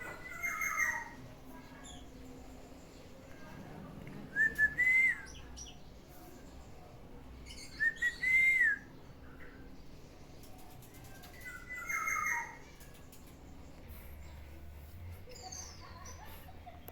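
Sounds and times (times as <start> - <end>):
bird whistling fluty phrases: 4.4 - 5.5, 7.6 - 8.9.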